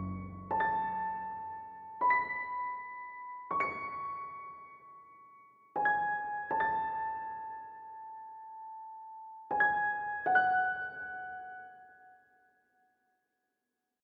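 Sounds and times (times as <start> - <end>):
slow piano melody: 0.0 - 12.2.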